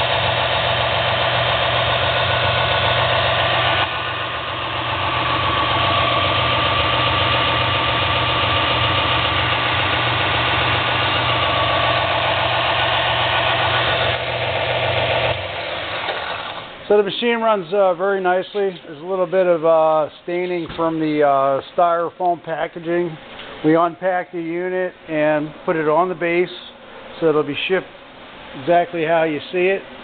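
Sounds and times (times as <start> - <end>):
sander motor humming: 0.0 - 16.6.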